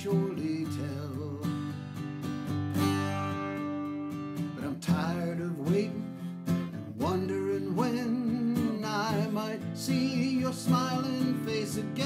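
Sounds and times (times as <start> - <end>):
man singing: 0.0 - 1.9, 4.6 - 12.0
acoustic guitar strumming: 0.0 - 12.0.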